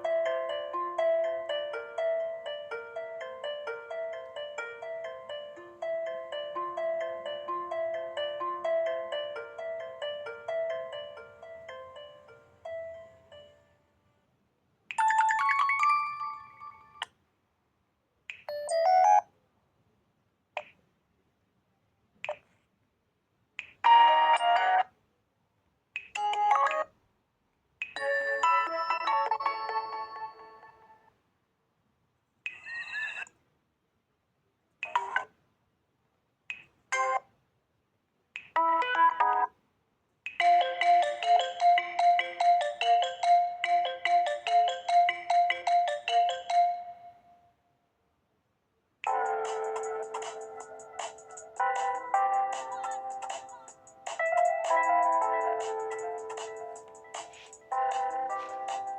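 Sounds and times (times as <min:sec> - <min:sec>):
melodic phone tune: 0:00.0 - 0:13.8, 0:15.0 - 0:17.0, 0:18.5 - 0:19.3, 0:23.9 - 0:24.8, 0:28.0 - 0:30.9, 0:40.4 - 0:47.4, 0:49.1 - 0:58.9
phone alert chime: 0:15.0 - 0:17.0.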